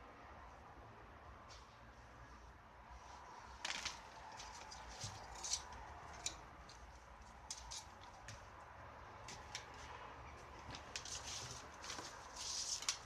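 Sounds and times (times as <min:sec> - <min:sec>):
small parts clicking and scraping: 0:03.6 - 0:08.4.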